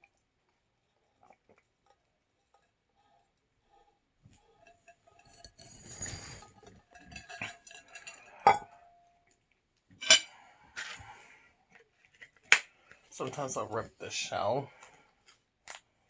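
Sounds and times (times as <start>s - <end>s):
glass and dishes clinking: 4.8s - 9.2s, 10.0s - 10.3s
ringing glass clink: 7.2s - 9.1s.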